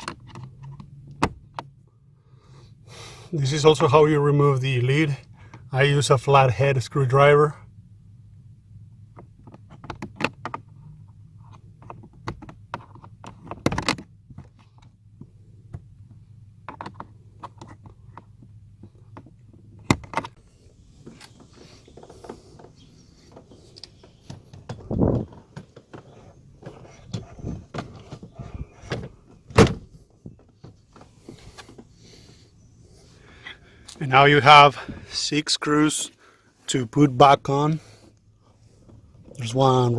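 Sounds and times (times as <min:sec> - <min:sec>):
loud thunks: 0:01.2 - 0:01.6, 0:21.0 - 0:31.5.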